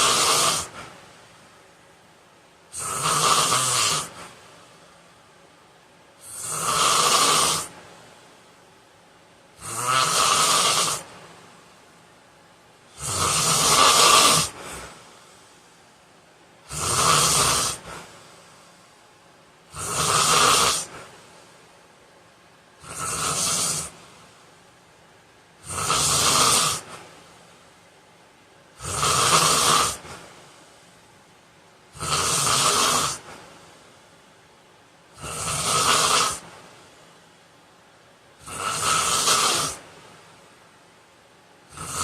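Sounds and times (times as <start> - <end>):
man snoring loudly: 0.0 - 0.8, 2.7 - 4.2, 6.2 - 7.7, 9.6 - 11.1, 13.0 - 14.9, 16.7 - 18.0, 19.7 - 20.9, 22.8 - 24.0, 25.6 - 26.9, 28.8 - 30.0, 32.0 - 33.2, 35.2 - 36.4, 38.4 - 39.8, 41.7 - 42.0.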